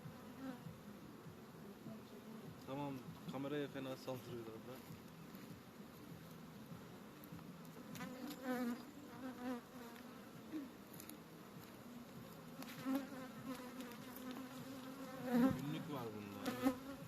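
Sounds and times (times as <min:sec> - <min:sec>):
bees buzzing: 0:04.9 - 0:17.0.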